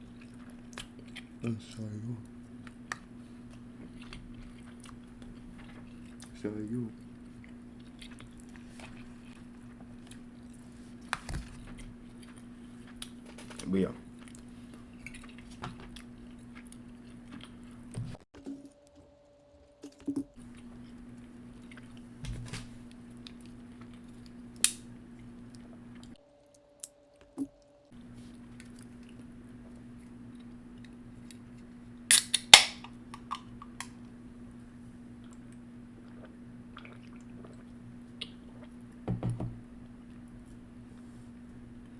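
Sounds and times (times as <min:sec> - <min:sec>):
chewing food: 0:00.0 - 0:18.2, 0:19.9 - 0:22.2, 0:22.8 - 0:26.2, 0:27.5 - 0:31.7, 0:35.1 - 0:39.0
faint steady hum: 0:00.0 - 0:41.9.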